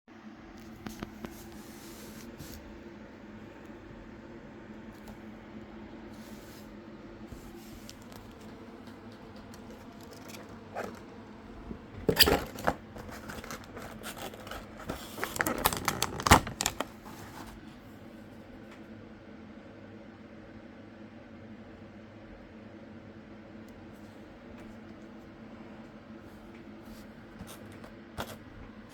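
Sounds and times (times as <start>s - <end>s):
faint steady hum: 0.1s - 28.9s
packaging clicks scrapes and crinkles: 12.1s - 17.5s.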